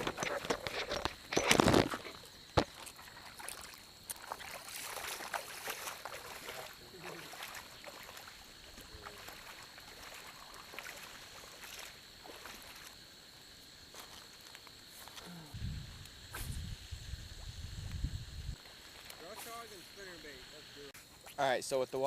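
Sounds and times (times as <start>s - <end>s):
water sloshing and splashing: 0.0s - 15.2s.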